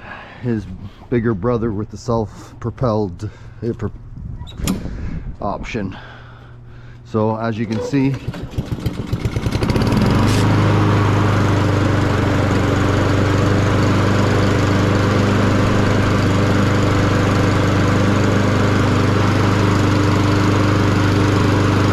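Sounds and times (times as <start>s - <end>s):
lawn mower engine running: 7.6s - 21.9s.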